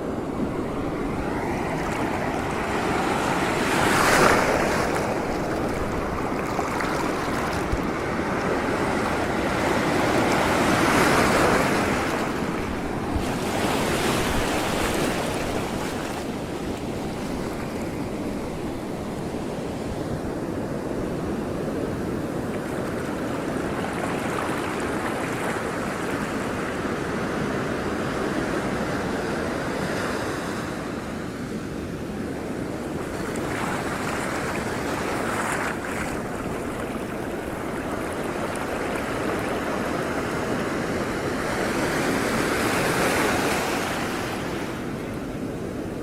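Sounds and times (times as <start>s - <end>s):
water rushing: 0.0s - 19.1s.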